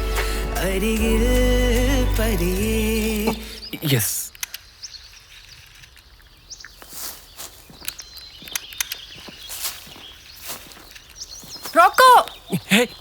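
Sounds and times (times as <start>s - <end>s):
quiet rural ambience: 3.0s - 13.0s.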